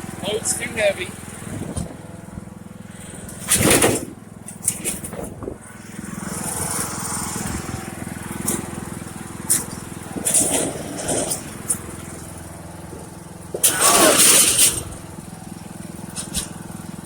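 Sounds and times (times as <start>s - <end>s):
riding lawn mower engine running: 0.0s - 17.0s
knocks and clatter: 3.2s - 5.7s.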